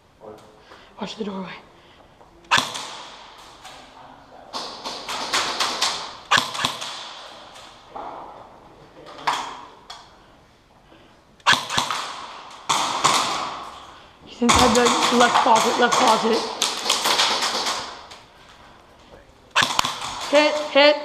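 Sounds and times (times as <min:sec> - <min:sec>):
airsoft guns popping: 0:02.5 - 0:03.6, 0:04.6 - 0:07.7, 0:11.4 - 0:13.7, 0:14.4 - 0:18.3, 0:19.5 - 0:20.8.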